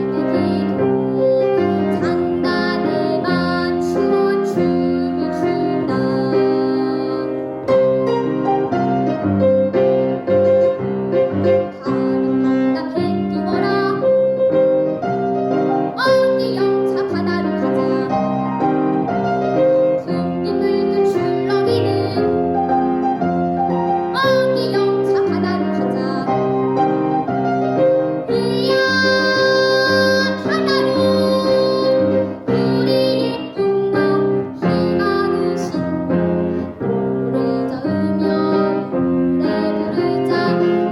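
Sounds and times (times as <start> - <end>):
child singing: 0.0 - 7.4, 11.6 - 14.3, 15.9 - 18.4, 19.8 - 22.5, 24.1 - 26.4, 28.3 - 36.2, 37.3 - 40.9
piano accompaniment: 0.0 - 40.9.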